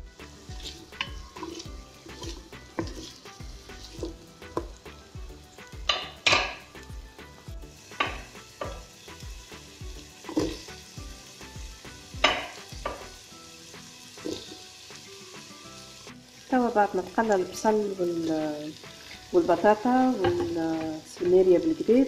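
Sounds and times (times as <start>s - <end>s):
vegetables sizzling in oil: 0.0s - 22.0s
wooden spoon scraping pot: 0.6s - 4.7s.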